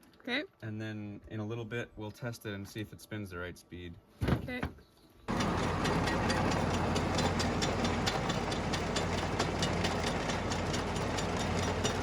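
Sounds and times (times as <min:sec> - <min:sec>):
tractor engine running: 0:05.3 - 0:12.0.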